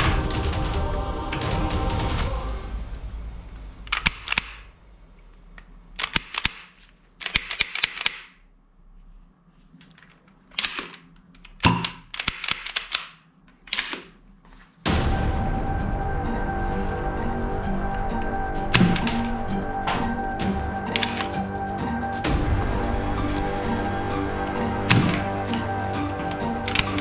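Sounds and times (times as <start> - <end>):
toy gun mechanism clicks and rattles: 6.0 - 8.4, 9.9 - 14.2.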